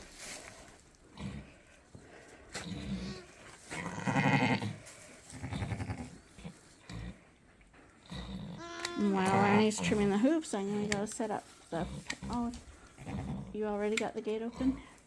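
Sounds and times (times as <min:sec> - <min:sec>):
sheep bleating: 0:08.6 - 0:09.8.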